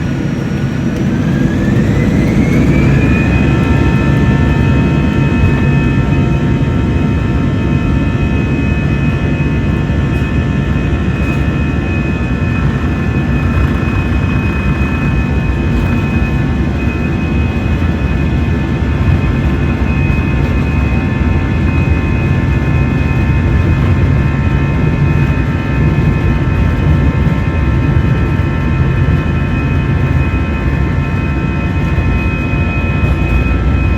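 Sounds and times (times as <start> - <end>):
jet engine whine: 0.0 - 33.9
low engine rumble: 0.0 - 33.9.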